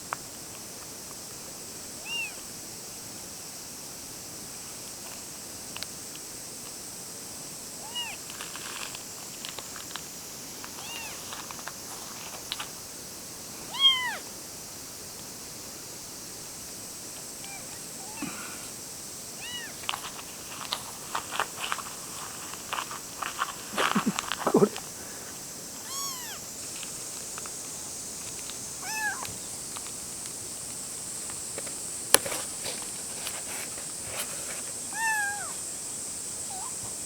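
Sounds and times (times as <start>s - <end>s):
kitten meowing: 2.0s - 2.4s, 7.8s - 8.2s, 10.8s - 11.2s, 13.7s - 14.2s, 17.4s - 18.2s, 19.4s - 19.8s, 25.8s - 26.4s, 28.8s - 29.3s, 34.9s - 35.6s, 36.5s - 36.8s
light clicks and scuffs: 19.8s - 24.9s, 31.3s - 34.8s.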